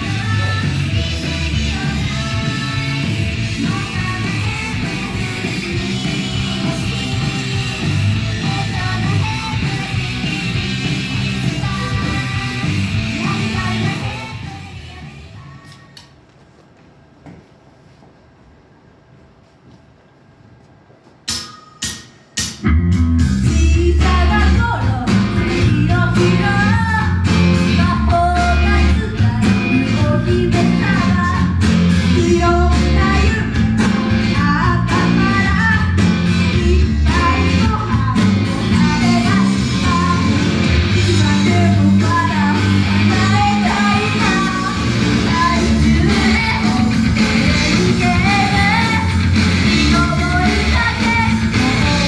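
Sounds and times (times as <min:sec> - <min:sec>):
rock pop track with guitar: 0:00.0 - 0:14.8, 0:22.7 - 0:52.0
sharp hits: 0:21.3 - 0:23.4.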